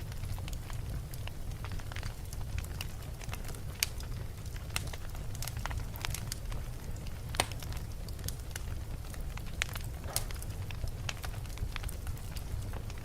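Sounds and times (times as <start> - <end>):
fire crackling in a fireplace: 0.0 - 13.0.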